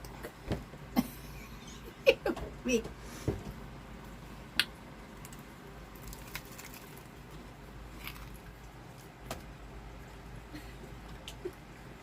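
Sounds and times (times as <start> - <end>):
person chewing crunchy food: 5.2 - 9.1.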